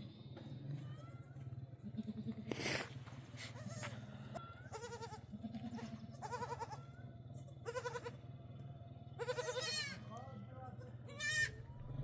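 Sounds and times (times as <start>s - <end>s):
steady low hum: 0.0s - 12.0s
goats bleating: 3.5s - 7.0s, 7.6s - 8.2s, 9.2s - 11.6s.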